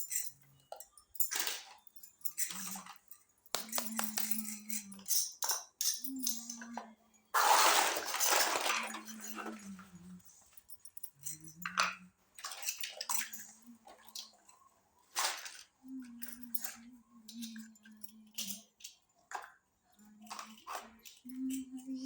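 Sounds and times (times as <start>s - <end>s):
plastic toy pieces tapping: 0.0s - 7.0s.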